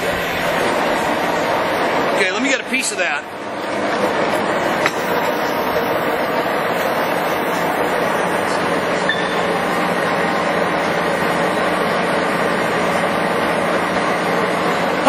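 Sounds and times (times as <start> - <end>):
lathe running: 0.0 - 15.0
low hum: 3.2 - 15.0.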